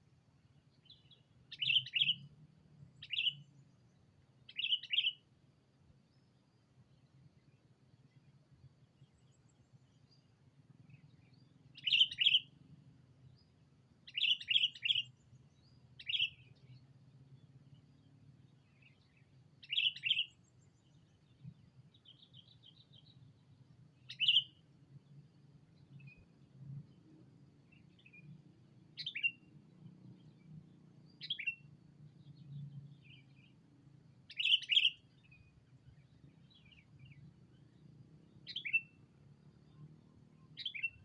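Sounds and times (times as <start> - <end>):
faint bird chattering: 1.5 - 2.2, 3.0 - 3.4, 4.5 - 5.2, 11.8 - 12.5, 14.1 - 15.1, 16.0 - 16.5, 19.6 - 20.4, 24.1 - 24.6, 34.3 - 35.1
bulbul calling: 1.5 - 2.3, 4.5 - 5.2, 11.8 - 12.5, 14.1 - 15.1, 16.0 - 16.4, 19.6 - 20.3, 24.1 - 24.6, 29.0 - 29.4, 31.2 - 31.6, 34.3 - 35.0, 38.5 - 39.0, 40.6 - 41.0.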